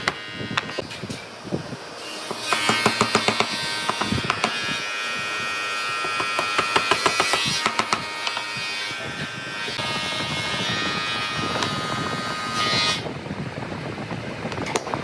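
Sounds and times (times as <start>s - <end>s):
power tool buzzing: 0.0s - 1.2s, 2.0s - 13.1s
knocks and taps on wood: 2.3s - 4.6s.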